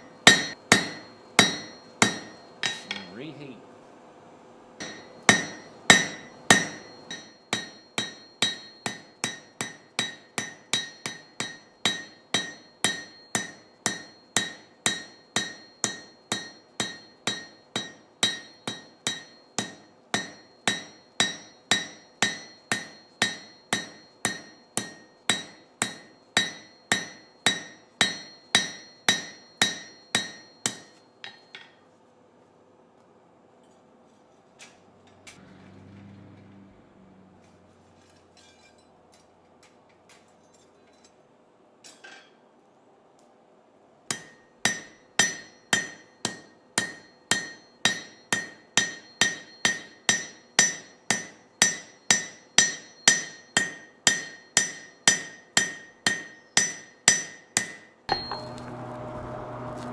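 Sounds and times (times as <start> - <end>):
hammer striking steel on anvil: 0.0 - 3.3, 4.8 - 31.8, 44.1 - 58.8.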